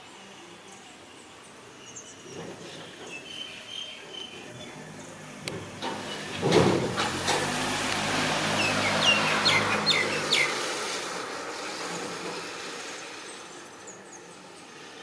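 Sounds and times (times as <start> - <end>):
birds chirping: 8.4 - 10.7.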